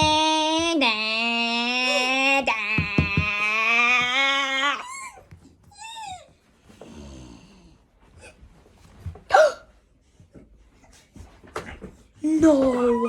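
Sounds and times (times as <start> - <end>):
wordless voice squeaks and yelps: 1.1 - 6.4, 12.4 - 13.0.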